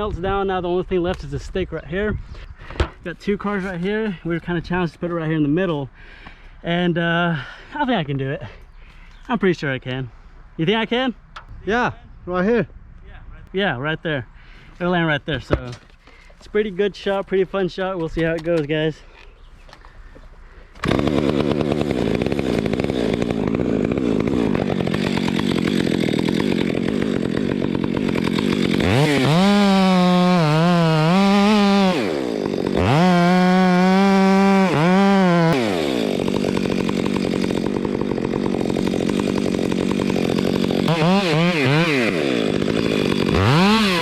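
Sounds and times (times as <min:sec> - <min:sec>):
chainsaw idling and revving: 0:20.7 - 0:44.0.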